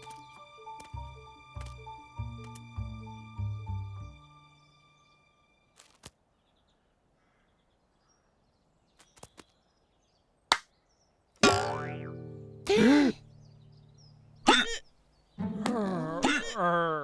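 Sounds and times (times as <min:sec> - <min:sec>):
music cue: 0:11.5 - 0:14.4, 0:15.4 - 0:16.7.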